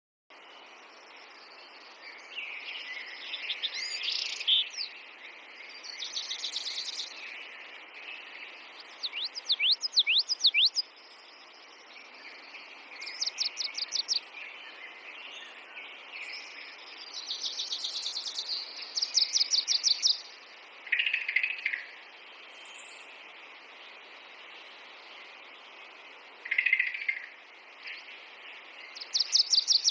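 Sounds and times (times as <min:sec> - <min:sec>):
songbirds chirping: 0:00.3 - 0:29.9
steady background hiss: 0:00.3 - 0:29.9
upward-sweeping bird whistles: 0:09.0 - 0:10.8, 0:29.0 - 0:29.9.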